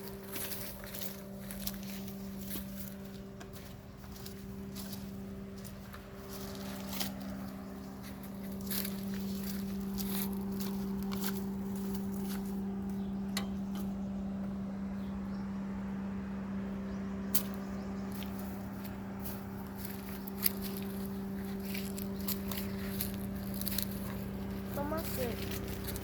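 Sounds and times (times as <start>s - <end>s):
steady mechanical hum: 0.0s - 26.0s.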